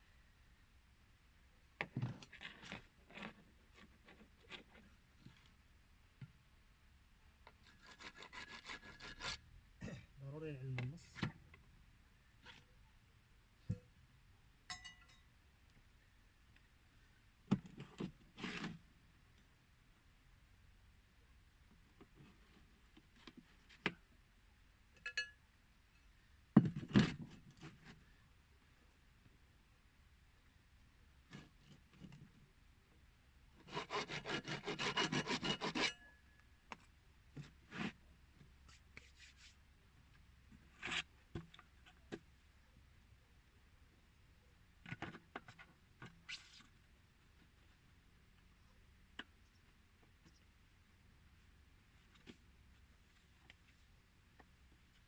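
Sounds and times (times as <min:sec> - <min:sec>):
rasp scraping plastic pipe: 0:07.6 - 0:09.4, 0:33.6 - 0:36.0
short ringing clink: 0:14.7 - 0:15.2.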